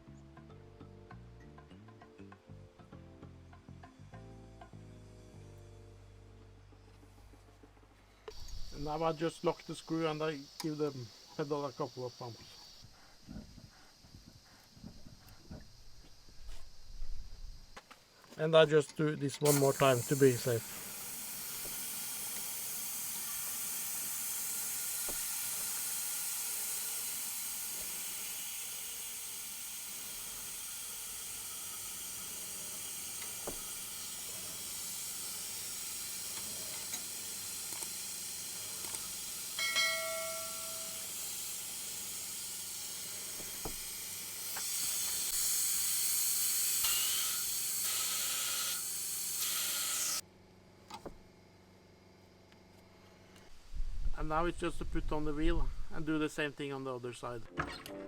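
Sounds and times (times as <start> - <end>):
pneumatic brake bleeder hissing: 8.3 - 16.8, 19.4 - 50.2.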